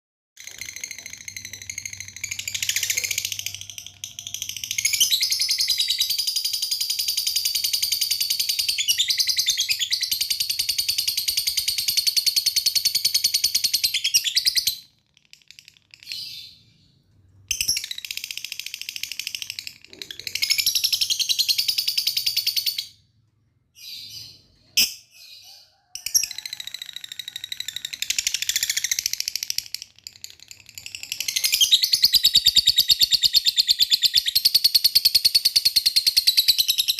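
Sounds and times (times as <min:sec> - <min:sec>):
lovebird chattering: 0:00.4 - 0:06.4.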